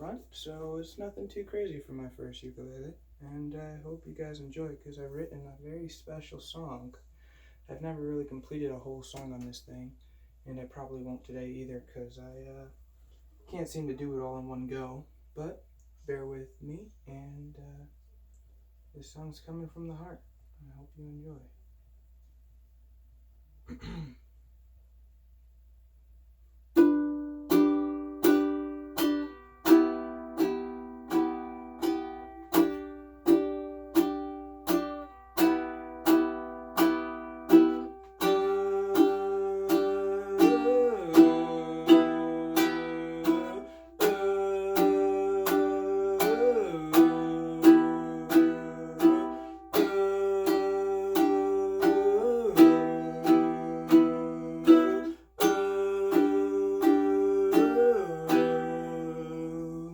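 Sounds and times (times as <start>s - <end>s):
ukulele strummed: 26.7s - 59.9s.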